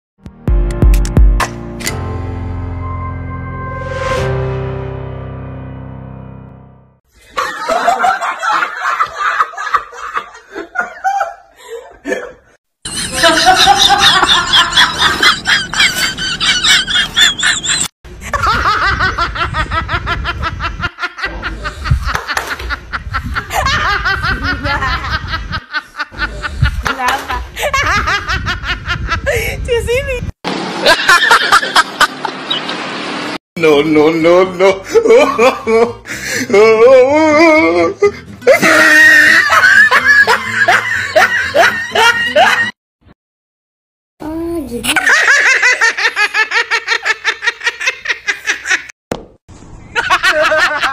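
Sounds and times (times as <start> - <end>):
people laughing and cackling: 7.2 - 29.5, 30.8 - 32.3, 34.3 - 42.8, 44.9 - 48.9, 50.0 - 50.9.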